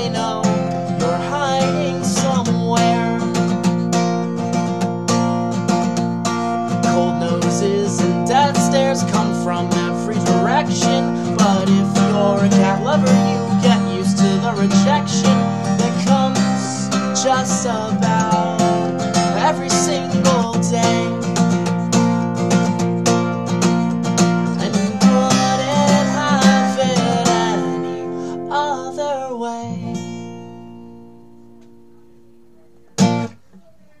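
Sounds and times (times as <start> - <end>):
person singing: 0.0 - 4.7, 6.7 - 22.8, 24.1 - 30.2
strummed acoustic guitar: 0.0 - 34.0.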